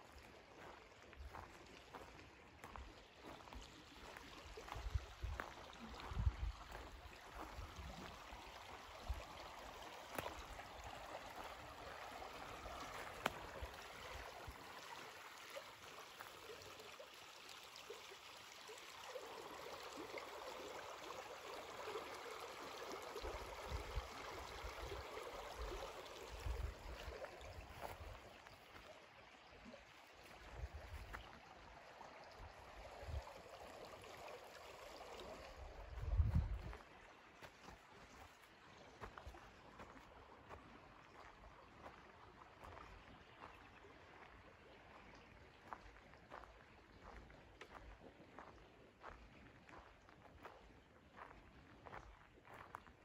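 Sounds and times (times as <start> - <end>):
river water rushing: 5.5 - 17.5.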